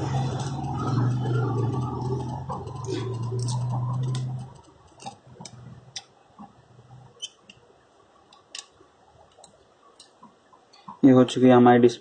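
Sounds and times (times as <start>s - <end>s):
low hum: 0.0s - 7.2s.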